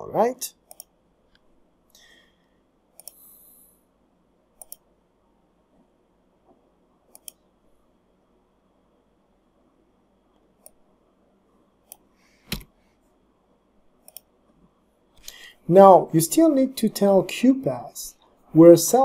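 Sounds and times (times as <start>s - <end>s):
computer mouse clicks: 0.6s - 1.5s, 2.9s - 3.3s, 4.6s - 4.9s, 7.1s - 7.4s, 10.6s - 10.8s, 11.8s - 12.7s, 14.0s - 14.3s.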